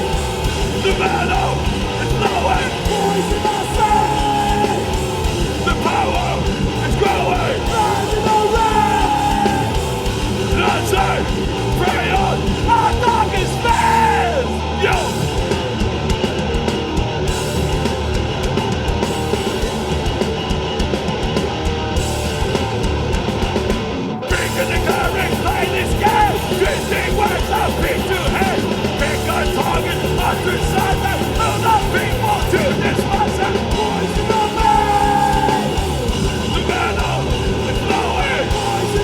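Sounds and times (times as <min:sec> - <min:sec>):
punk band playing live: 0:00.0 - 0:39.0.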